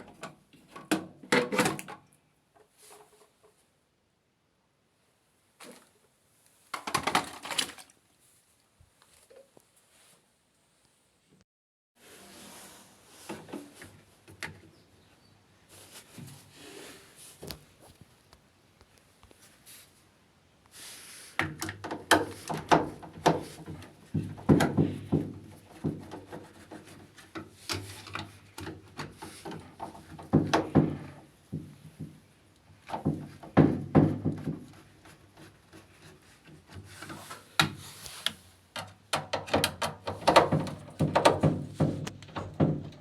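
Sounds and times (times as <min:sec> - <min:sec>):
sharp knocks and clatters: 0:21.4 - 0:32.2, 0:38.8 - 0:43.0.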